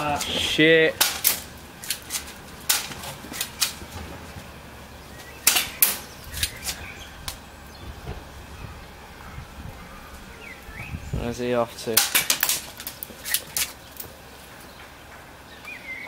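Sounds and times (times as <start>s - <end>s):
airsoft gun shots snapping: 5.4s - 6.6s.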